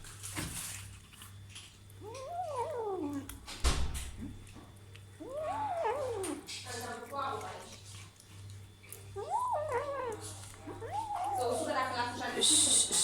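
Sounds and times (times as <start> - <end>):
kitten yowling: 2.0 - 3.4, 5.2 - 6.5, 9.1 - 12.1.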